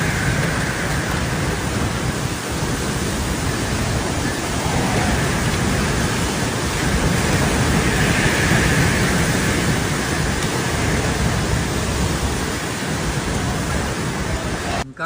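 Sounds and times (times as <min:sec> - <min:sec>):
stormy weather rushing noise: 0:00.0 - 0:15.0.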